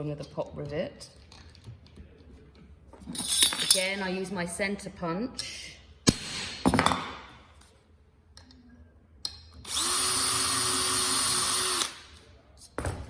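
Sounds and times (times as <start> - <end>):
power drill drilling metal: 9.7 - 12.0.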